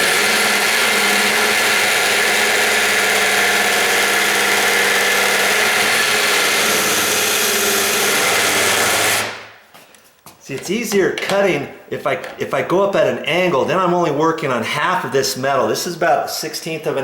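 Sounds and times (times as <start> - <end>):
electric drill cutting metal: 0.0 - 9.5.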